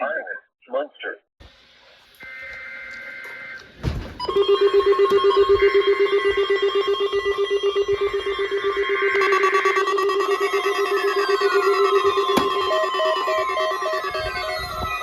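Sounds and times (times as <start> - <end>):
pulsing electronic alarm beep: 2.2 - 15.0
two-pitch data tones: 2.2 - 15.0.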